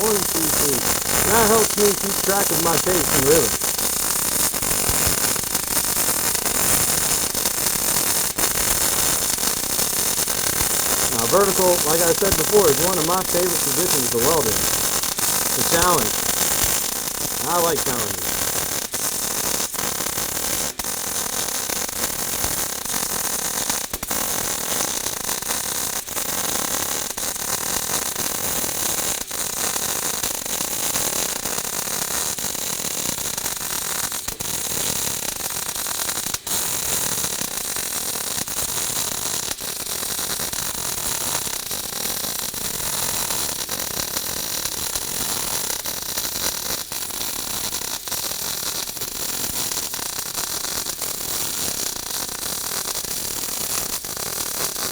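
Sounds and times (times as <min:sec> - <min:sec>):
welding arc crackling hiss: 0:00.0 - 0:03.6, 0:11.1 - 0:14.7.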